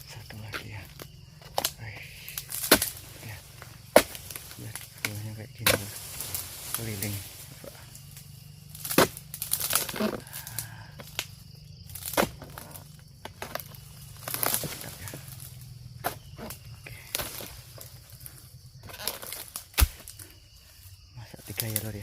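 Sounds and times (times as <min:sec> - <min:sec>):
chopping in dry palm fronds: 0:00.8 - 0:20.4
fruit bunch thudding on ground: 0:02.5 - 0:07.4.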